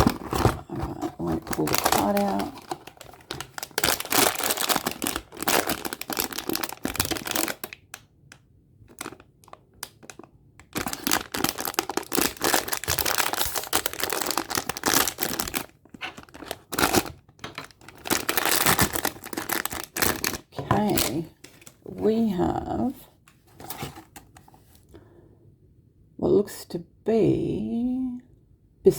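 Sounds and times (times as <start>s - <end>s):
packaging tearing and crinkling: 0.0s - 7.9s, 8.9s - 21.8s.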